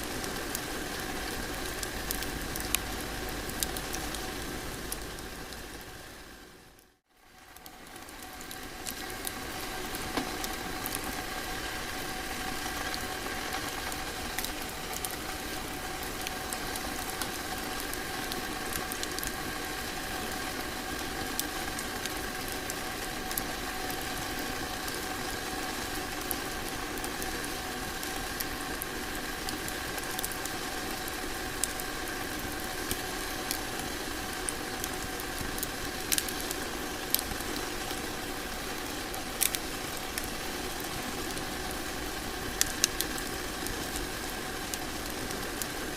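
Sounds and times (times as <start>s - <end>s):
wood fire crackling: 0.0s - 45.9s.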